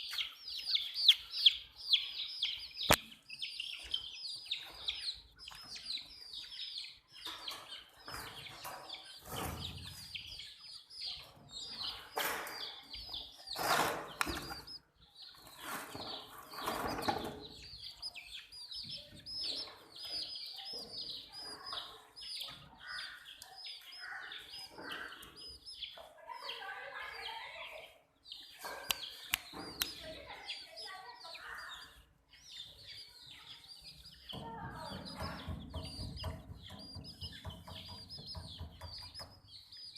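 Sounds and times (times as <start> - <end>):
baby chicks peeping: 0.0 - 39.9.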